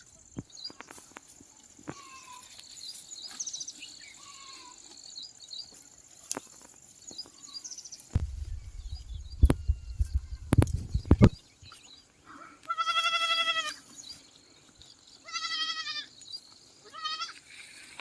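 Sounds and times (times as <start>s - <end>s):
goat bleating: 1.9s - 2.5s, 4.2s - 4.8s, 8.6s - 11.3s, 12.5s - 13.8s, 15.2s - 16.1s, 16.8s - 17.4s
sharp knocks: 8.2s - 11.4s.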